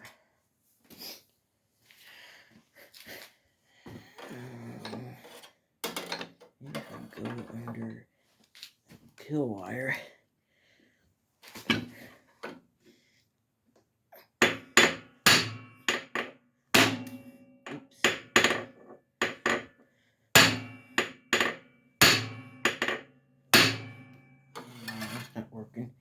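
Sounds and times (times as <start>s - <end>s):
hammer striking steel: 14.4s - 19.6s, 20.4s - 23.0s, 23.6s - 24.3s.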